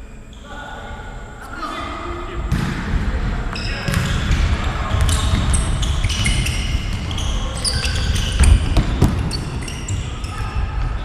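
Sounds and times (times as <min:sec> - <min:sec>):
ball thuds: 0:02.5 - 0:03.3
shoes squeaking on floor: 0:04.9 - 0:11.0.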